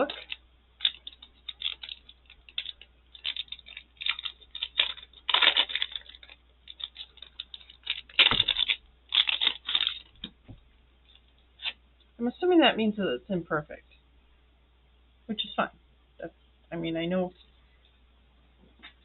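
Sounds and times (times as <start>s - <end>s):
packaging crinkling and tearing: 0.0s - 10.4s.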